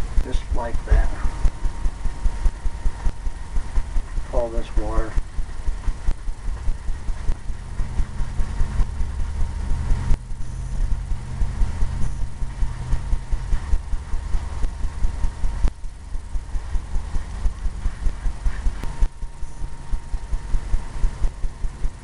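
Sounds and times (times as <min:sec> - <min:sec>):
low steady hum: 0:00.0 - 0:22.0
paintbrush strokes on canvas: 0:17.5 - 0:18.8.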